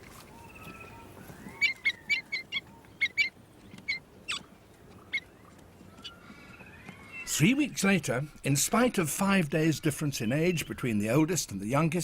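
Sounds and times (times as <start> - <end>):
faint whistled glides: 5.9 - 7.3.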